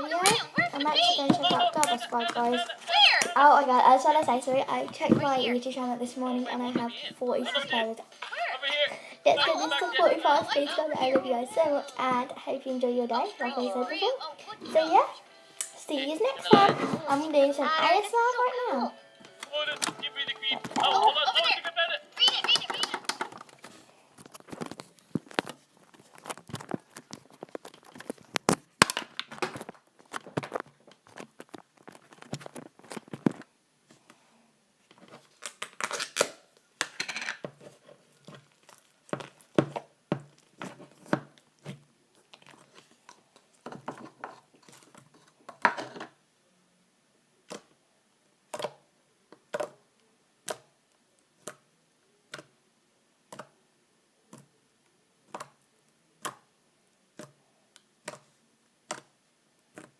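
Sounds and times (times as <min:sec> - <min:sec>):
slime crackling and popping: 0:38.2 - 0:40.6.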